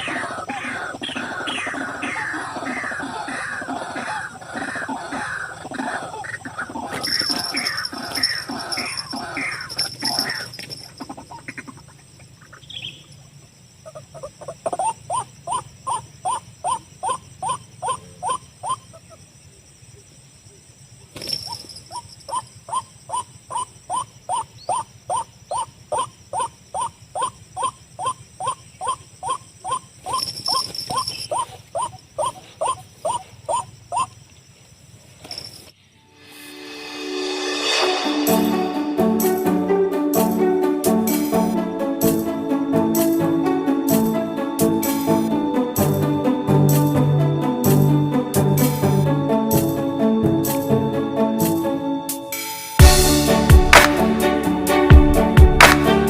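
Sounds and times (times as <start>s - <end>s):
waterhen calling: 0.0s - 19.3s, 21.2s - 34.3s
steady high-pitched whine: 36.0s - 39.3s.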